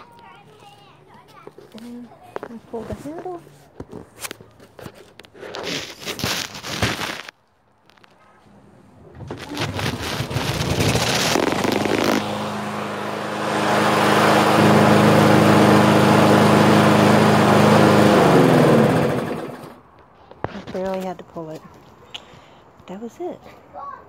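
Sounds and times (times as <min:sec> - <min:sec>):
lawn mower engine running: 0:09.2 - 0:19.9.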